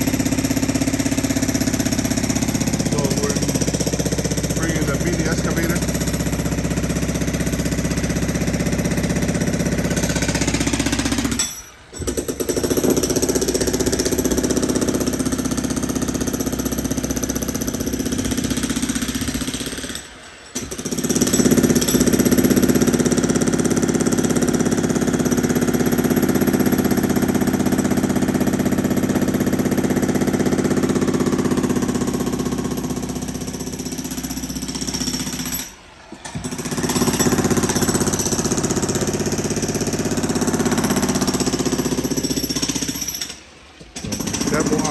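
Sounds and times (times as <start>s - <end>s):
breaker hammer pounding concrete: 0.0s - 44.9s.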